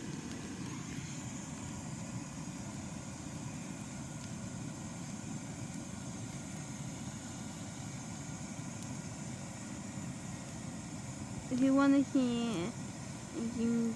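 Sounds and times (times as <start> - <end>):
bonfire roaring: 0.0 - 13.9.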